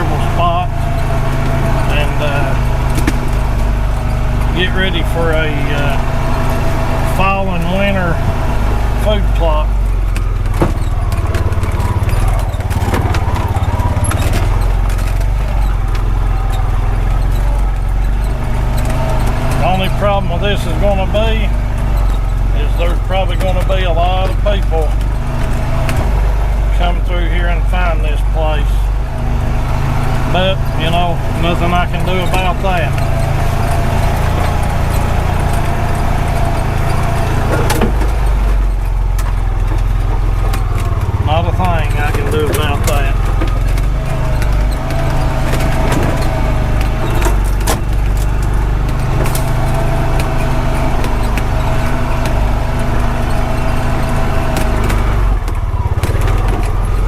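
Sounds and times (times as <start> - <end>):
engine low rumble: 0.0 - 57.0.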